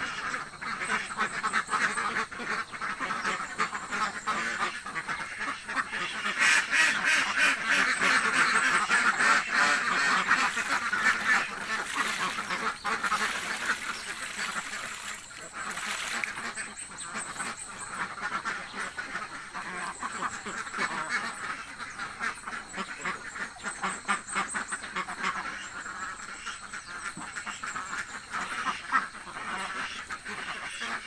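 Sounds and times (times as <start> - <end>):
ducks quacking: 0.8 - 21.9.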